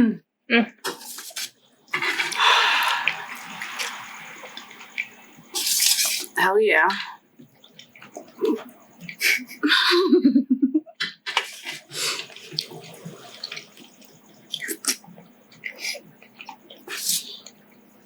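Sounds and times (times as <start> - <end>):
wet slurping of noodle broth: 0.9 - 6.4, 11.4 - 17.6.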